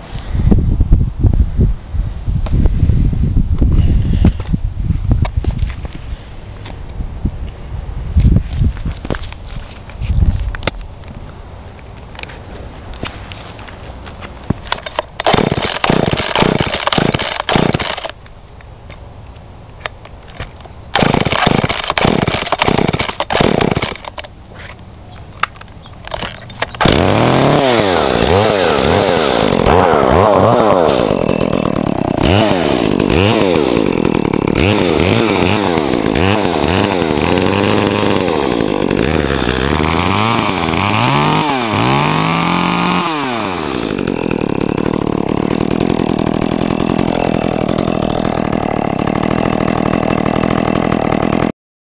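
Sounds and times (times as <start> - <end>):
chainsaw revving: 14.7 - 18.2, 21.0 - 24.3, 26.0 - 51.5.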